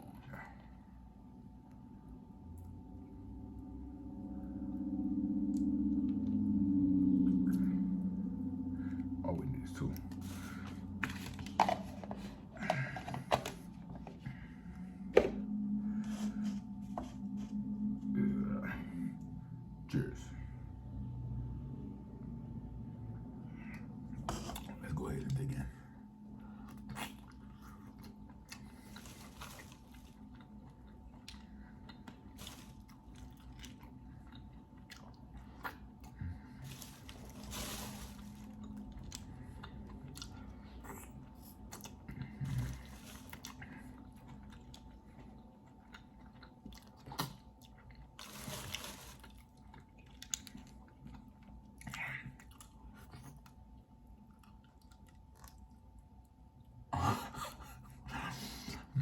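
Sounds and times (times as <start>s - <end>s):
faint steady hum: 0.0s - 59.0s
person chewing clams: 26.6s - 56.7s.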